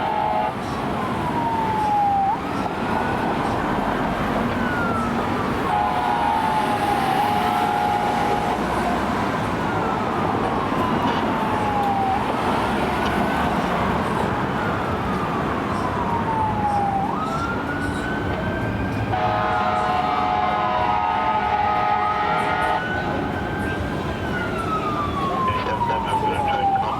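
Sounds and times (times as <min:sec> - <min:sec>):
fire engine air horn: 0:00.0 - 0:00.8, 0:05.6 - 0:08.8, 0:19.1 - 0:23.4
siren wailing: 0:00.0 - 0:26.9.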